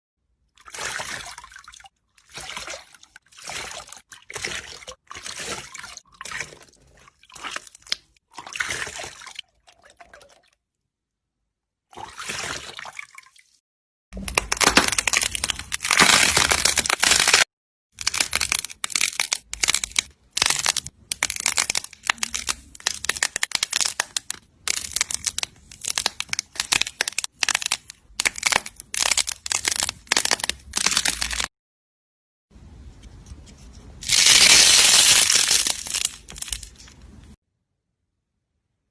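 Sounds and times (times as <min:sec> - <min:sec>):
slime squishing by hand: 0:14.2 - 0:17.4, 0:18.0 - 0:31.5.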